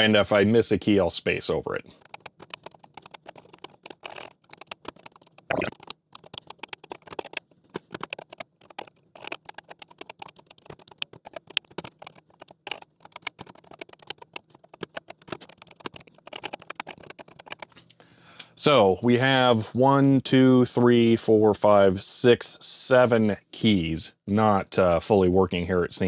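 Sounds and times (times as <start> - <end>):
keyboard keys clicking: 0.0 - 18.0.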